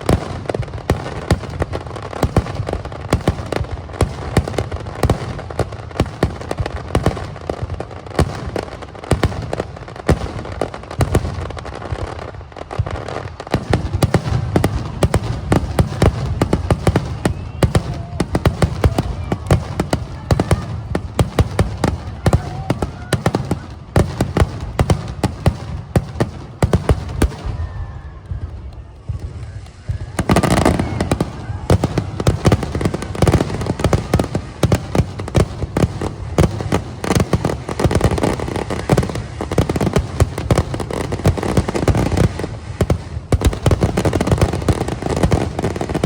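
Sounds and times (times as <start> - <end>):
fireworks bangs and crackling: 0.0 - 46.0.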